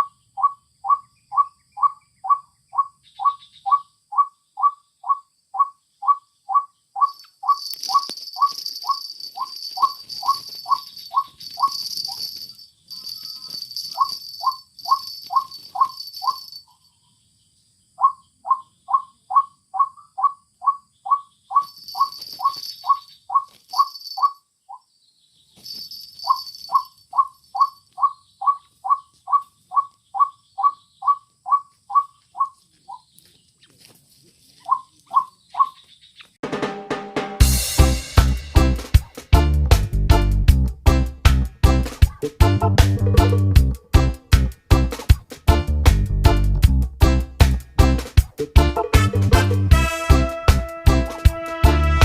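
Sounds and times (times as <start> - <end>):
bird calling two-part notes: 0.0 - 16.9, 18.0 - 24.9, 26.2 - 33.1, 34.6 - 36.3
insects buzzing: 0.0 - 36.1.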